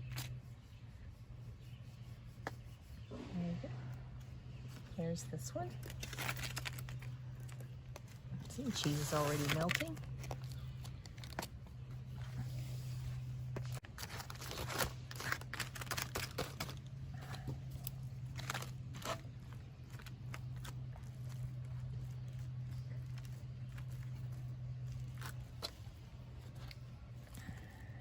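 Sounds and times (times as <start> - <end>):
steady low hum: 0.0 - 28.0
aluminium foil crinkling and tearing: 5.7 - 12.2, 13.7 - 27.5.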